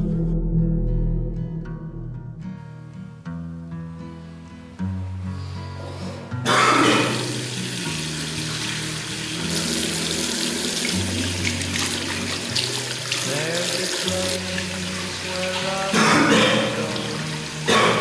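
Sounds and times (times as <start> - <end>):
background music with bass notes: 0.0 - 18.0
running water rushing: 6.5 - 18.0.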